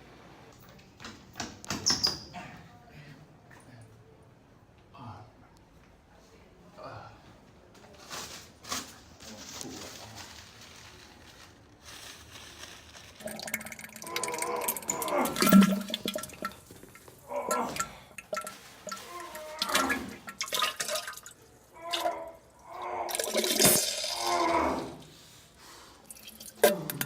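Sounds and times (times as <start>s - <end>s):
water splashing in toilet: 13.2s - 22.1s, 23.1s - 24.5s
man groaning and straining: 13.9s - 16.0s, 17.2s - 18.1s, 18.9s - 20.2s, 21.7s - 25.1s.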